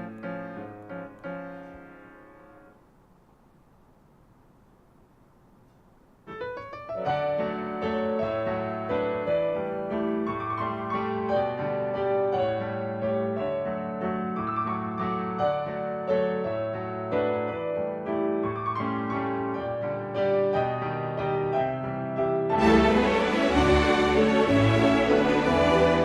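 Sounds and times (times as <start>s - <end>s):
piano piece: 0.0s - 3.4s, 6.1s - 26.0s
faint hiss: 0.0s - 11.0s.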